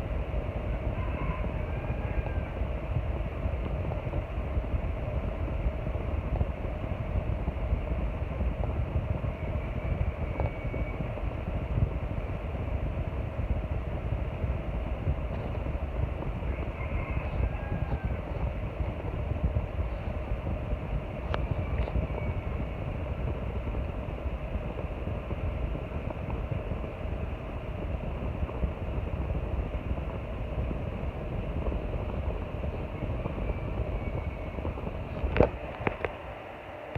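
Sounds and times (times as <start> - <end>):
electric fan running: 0.0 - 36.9.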